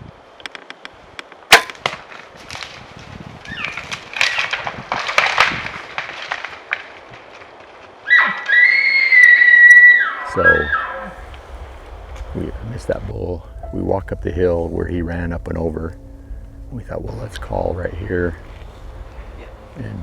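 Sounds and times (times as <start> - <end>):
brush cracking and rustling: 0.3 - 20.0
sharp wood crack: 0.5 - 9.5
elk bugle whistling: 8.1 - 12.1.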